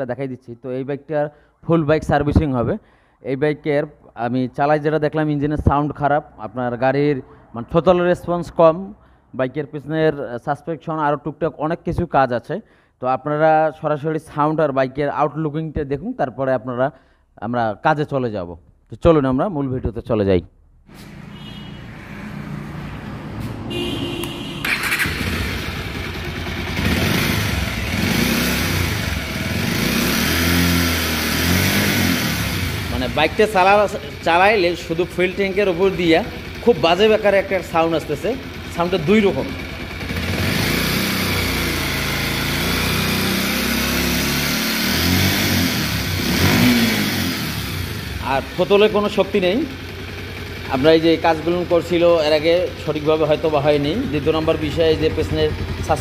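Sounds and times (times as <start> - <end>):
motorcycle engine revving: 20.9 - 56.0.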